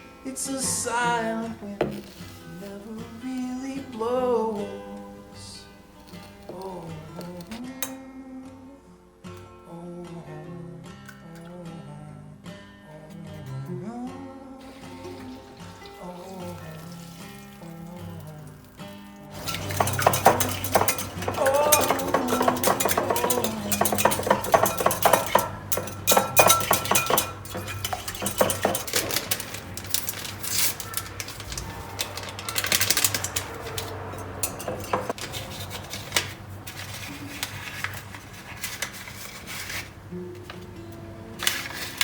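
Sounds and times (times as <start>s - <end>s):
cutlery clinking against dishes: 19.3s - 40.6s, 41.4s - 42.0s.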